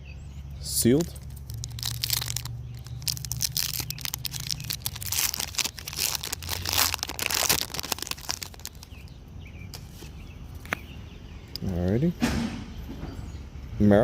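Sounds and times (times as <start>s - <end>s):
foil pack tearing and crinkling: 1.2s - 8.9s.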